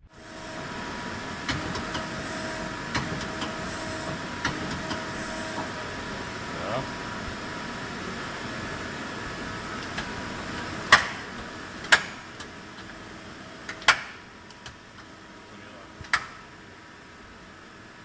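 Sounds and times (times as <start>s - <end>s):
lathe humming: 0.0s - 13.4s.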